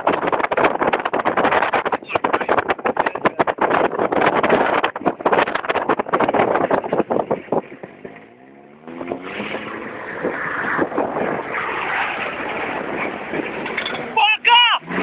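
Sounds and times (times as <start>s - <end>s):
engine revving: 7.7s - 14.2s, 14.8s - 15.0s.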